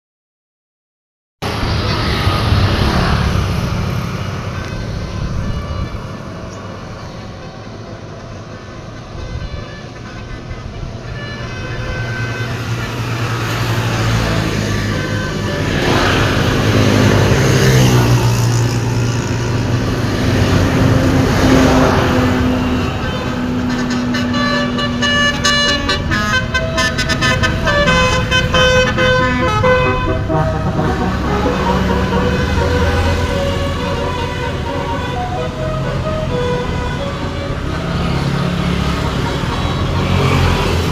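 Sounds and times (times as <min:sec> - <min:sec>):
large vehicle engine drone: 0:01.4 - 0:40.9
tyre and road noise: 0:01.4 - 0:40.9
musical air horn tune: 0:09.0 - 0:17.6, 0:20.5 - 0:40.9.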